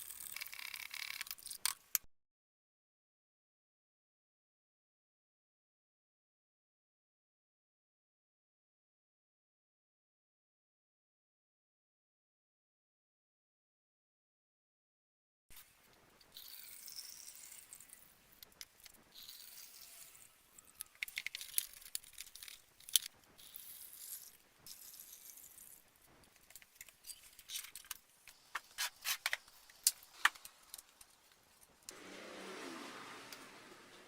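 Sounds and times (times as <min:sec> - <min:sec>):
small metal parts clinking: 0:16.3 - 0:31.7.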